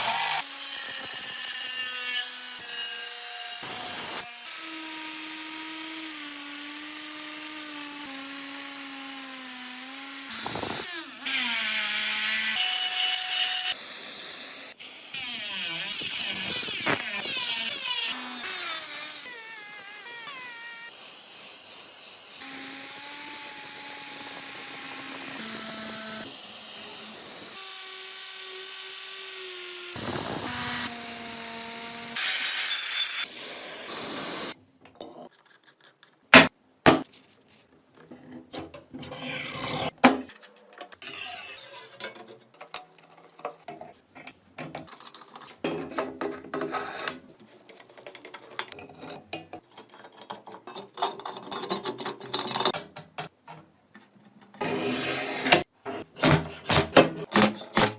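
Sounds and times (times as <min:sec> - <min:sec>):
power tool motor whine: 0:10.3 - 0:10.9, 0:22.4 - 0:34.6.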